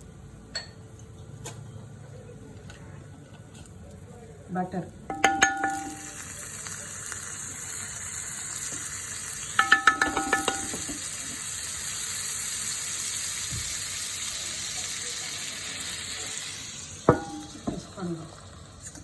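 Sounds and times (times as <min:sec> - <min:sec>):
utensil clinking on plate: 0:05.1 - 0:06.2, 0:09.6 - 0:11.0
food sizzling on a hot pan: 0:05.1 - 0:19.0.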